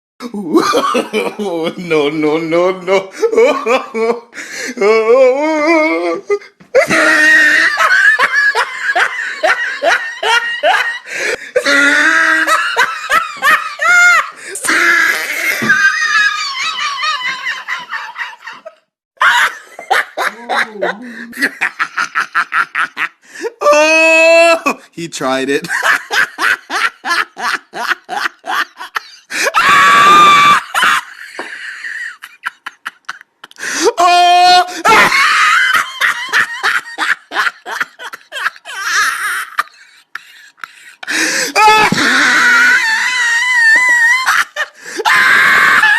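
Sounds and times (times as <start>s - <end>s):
person laughing: 0.2s - 2.0s, 2.8s - 24.8s, 25.6s - 45.9s
wheezy breathy gasps: 40.7s - 41.6s.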